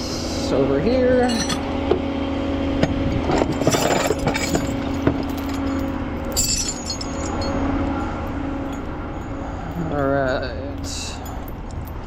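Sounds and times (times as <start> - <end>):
metal clinking and rattling: 1.2 - 1.7, 3.2 - 7.6.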